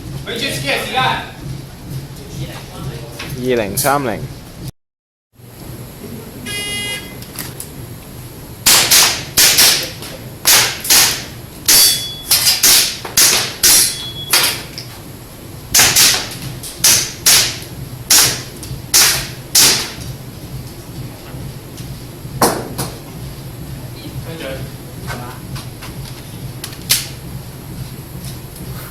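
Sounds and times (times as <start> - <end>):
airsoft pistol shots: 8.6 - 9.9, 15.8 - 20.0
shot timer beep: 13.9 - 14.4.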